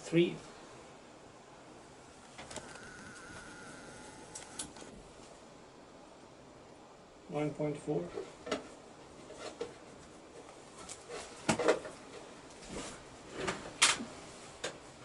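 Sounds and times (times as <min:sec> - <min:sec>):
clicks knocks and rustles of handling: 0:08.1 - 0:14.8.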